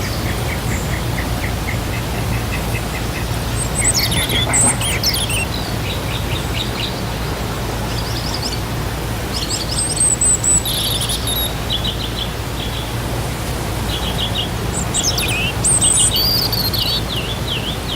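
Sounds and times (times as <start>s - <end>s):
bird chirping trills: 0.0s - 7.3s, 13.9s - 17.9s
waterfall rushing: 0.0s - 17.9s.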